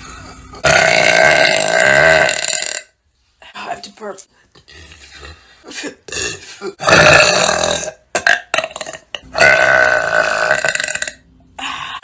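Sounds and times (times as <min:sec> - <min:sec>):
woman burping loudly: 0:00.6 - 0:03.0, 0:05.6 - 0:11.7.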